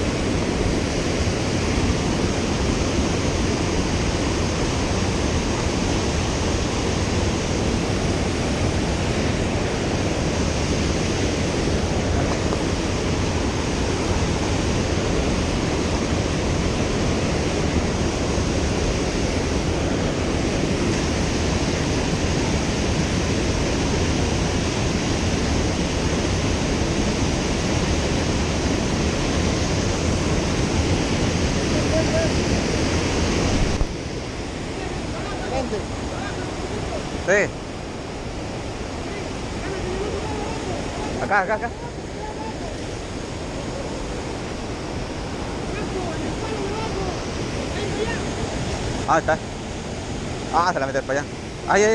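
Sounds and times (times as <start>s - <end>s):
river water rushing: 0.0s - 51.9s.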